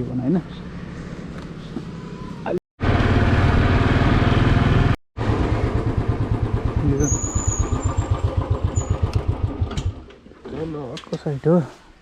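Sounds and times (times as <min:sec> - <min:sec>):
motorcycle engine idling: 0:05.2 - 0:10.0.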